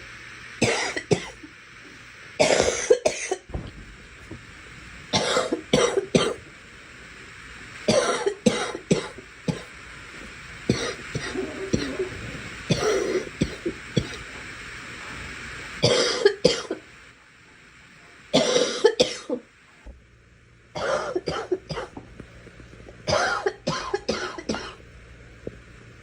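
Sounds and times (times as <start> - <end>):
steady background hiss: 0.0 - 26.0
girl coughing: 2.4 - 3.4, 10.7 - 12.1, 12.7 - 14.3, 15.8 - 16.8, 18.4 - 19.4, 20.8 - 21.9, 23.1 - 24.8.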